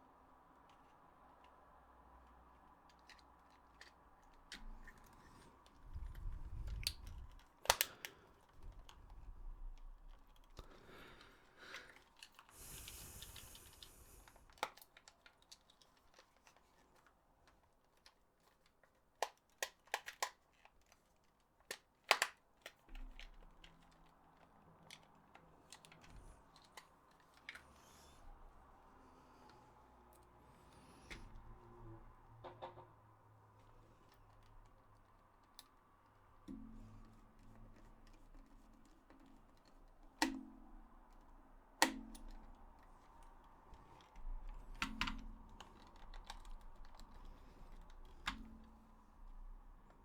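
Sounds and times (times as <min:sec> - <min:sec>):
plastic clicks and knocks: 0:11.7 - 0:27.7, 0:32.4 - 0:33.0, 0:36.4 - 0:50.0
soft hiss: 0:12.4 - 0:14.6.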